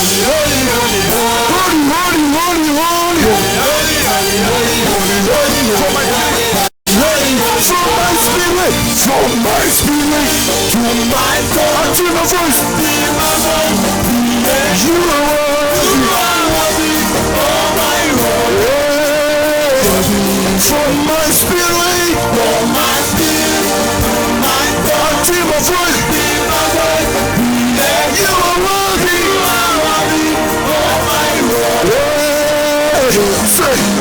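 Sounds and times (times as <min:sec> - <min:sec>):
gospel band playing: 0:00.0 - 0:34.0
person singing: 0:00.0 - 0:34.0.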